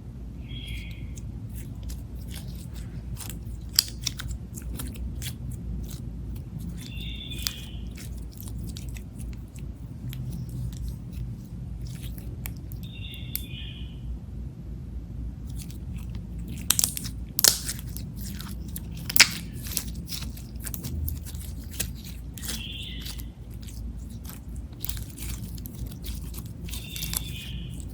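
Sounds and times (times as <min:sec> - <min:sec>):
high squeaks: 0:18.2 - 0:27.9.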